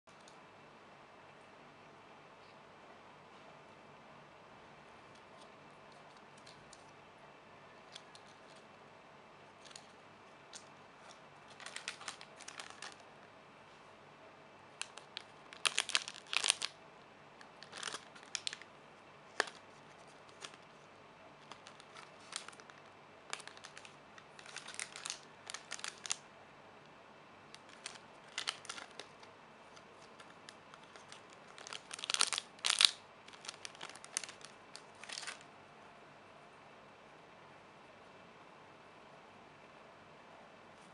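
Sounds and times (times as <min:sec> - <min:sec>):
plastic packaging crinkling: 0:09.6 - 0:13.1, 0:14.8 - 0:16.8, 0:17.4 - 0:18.7, 0:19.3 - 0:20.8, 0:21.4 - 0:26.2, 0:27.6 - 0:35.4.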